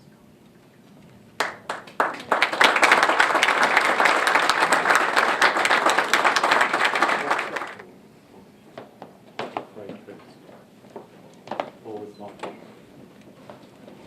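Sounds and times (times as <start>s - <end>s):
audience applauding: 1.4s - 7.8s.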